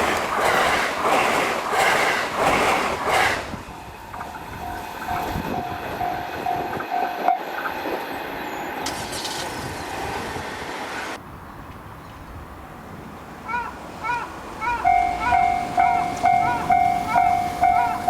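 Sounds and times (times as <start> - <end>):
train noise: 0.0 - 18.0
level crossing warning bell: 4.1 - 7.7, 14.7 - 18.0.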